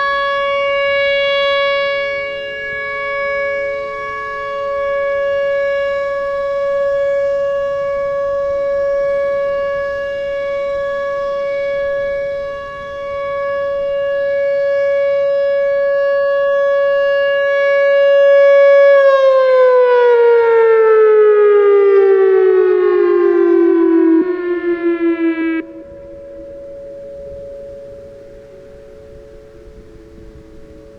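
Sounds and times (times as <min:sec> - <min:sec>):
warning siren winding down: 0:00.0 - 0:30.9
faint steady tone: 0:24.6 - 0:30.9.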